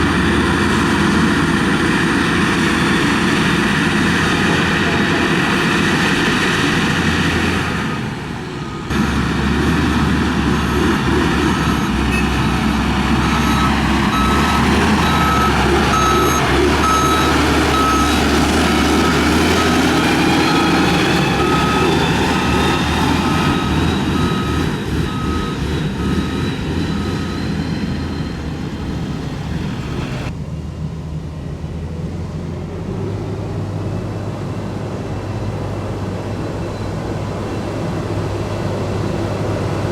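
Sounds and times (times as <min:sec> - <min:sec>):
diesel engine running: 0:00.0 - 0:39.9
reversing alarm beeps: 0:07.6 - 0:09.3, 0:10.4 - 0:29.6.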